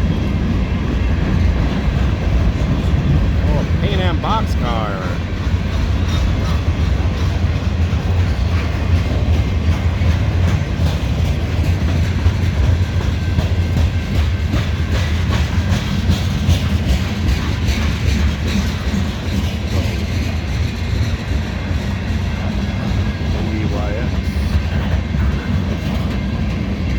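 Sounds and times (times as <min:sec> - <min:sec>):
freight train rumbling past: 0:00.0 - 0:26.9
wheels clicking over rail joints: 0:05.2 - 0:23.4.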